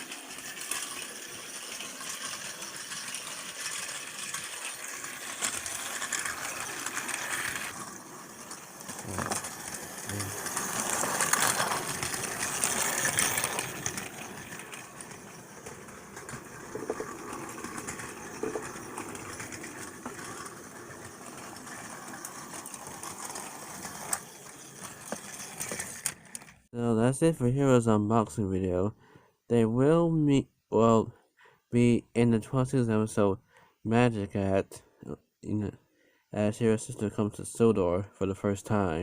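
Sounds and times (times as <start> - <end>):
toy train motor whirring: 0.0 - 26.7
wheels clattering over track joints: 0.0 - 26.7.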